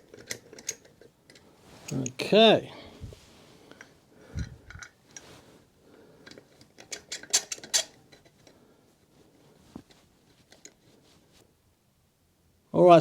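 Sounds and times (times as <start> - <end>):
metal bolts clicking and clinking: 0.0 - 2.2, 6.2 - 8.3.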